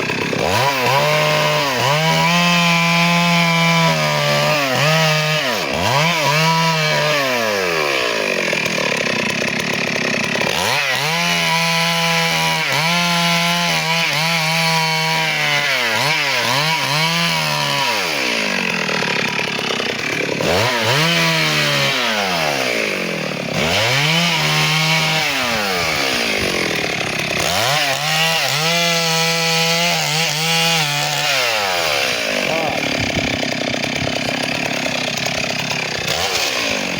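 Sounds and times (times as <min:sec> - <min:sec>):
chainsaw cutting wood: 0:00.0 - 0:36.9.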